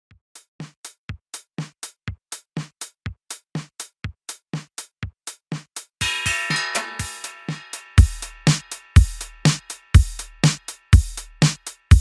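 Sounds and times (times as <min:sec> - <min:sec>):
electronic drum-machine beat: 0:04.6 - 0:12.0.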